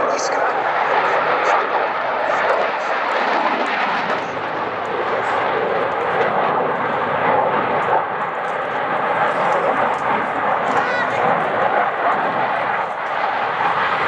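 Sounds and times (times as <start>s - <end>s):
loud rushing jet noise: 0.0s - 14.0s.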